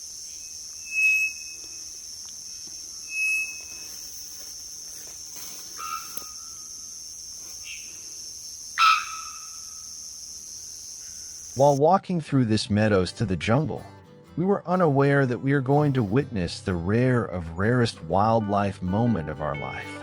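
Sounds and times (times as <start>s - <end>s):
insects droning: 0.0s - 11.8s
bird whistled notes: 0.3s - 1.9s, 3.0s - 4.0s
bird bonk-like calls: 5.8s - 6.4s, 8.8s - 9.6s.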